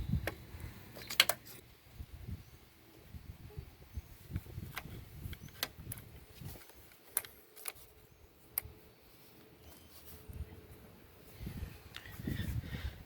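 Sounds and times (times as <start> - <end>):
faint handling noise: 4.2 - 12.7.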